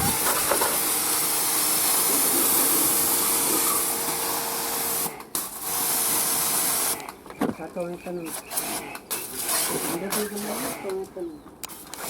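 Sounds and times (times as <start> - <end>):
pressure washer spraying: 0.0 - 7.0, 8.5 - 10.9.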